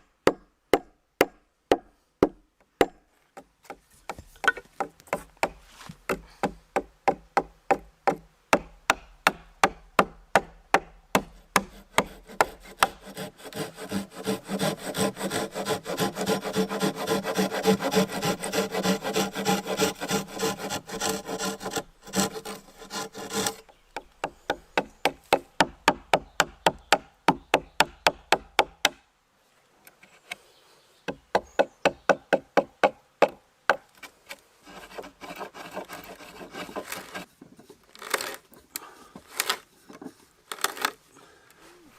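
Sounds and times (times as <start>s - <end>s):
hand tool scraping wood: 3.2s - 7.8s, 10.4s - 25.5s, 33.7s - 41.1s.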